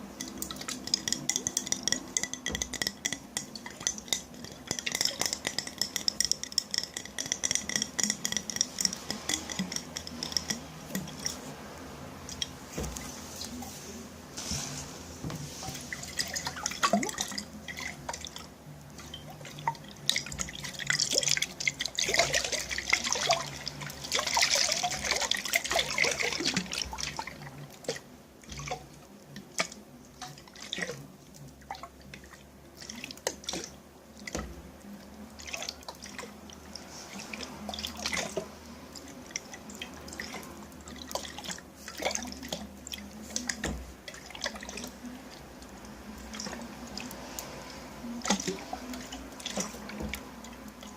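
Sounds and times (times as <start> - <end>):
water dripping and splashing: 0.0 - 14.6, 15.2 - 50.9.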